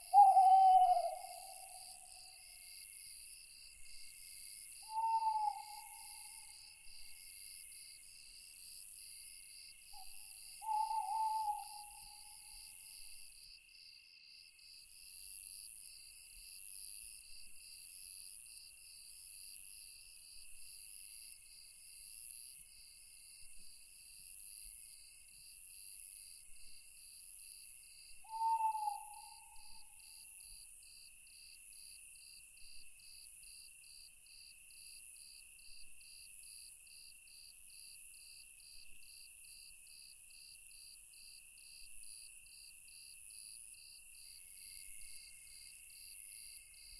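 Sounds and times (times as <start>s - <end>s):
owl hoot: 0.0s - 2.2s, 4.8s - 6.5s, 10.6s - 12.4s, 28.2s - 29.9s
crickets trilling: 0.0s - 2.4s, 4.8s - 6.4s, 10.6s - 12.2s, 28.2s - 29.9s.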